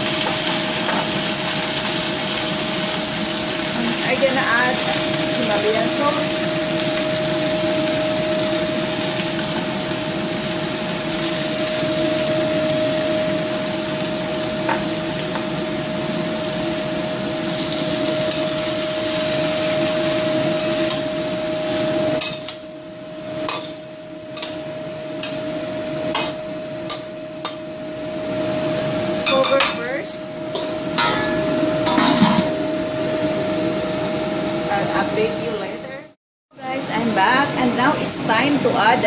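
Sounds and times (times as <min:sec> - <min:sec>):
cabbage sizzling in a pan: 0:00.0 - 0:32.6
kitchen exhaust fan hum: 0:00.0 - 0:39.0.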